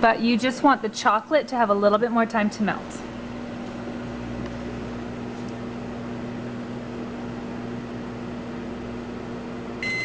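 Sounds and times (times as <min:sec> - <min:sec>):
microwave oven humming: 0:00.0 - 0:10.0
microwave beep: 0:09.8 - 0:10.0.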